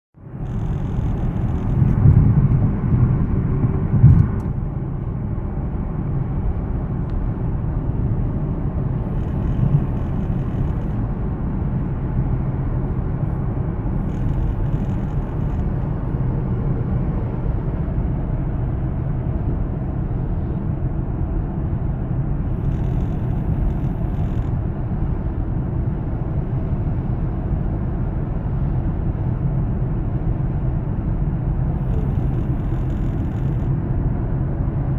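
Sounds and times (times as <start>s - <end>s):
car rumbling in motion: 0.2s - 34.9s
loud thumps: 3.6s - 4.6s.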